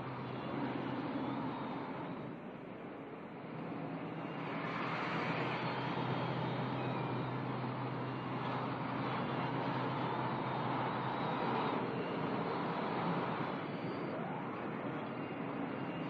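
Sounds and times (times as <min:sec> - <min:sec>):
road traffic rush: 0:03.5 - 0:14.8.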